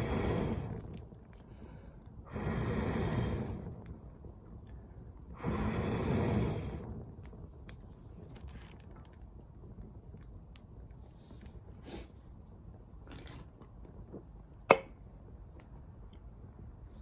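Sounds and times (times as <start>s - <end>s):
campfire crackling and popping: 0.0s - 11.8s.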